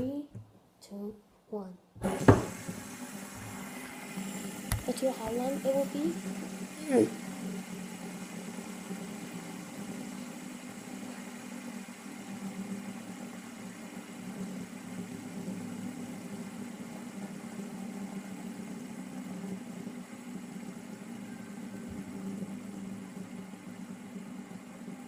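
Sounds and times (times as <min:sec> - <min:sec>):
fidget spinner humming: 0:02.0 - 0:25.0.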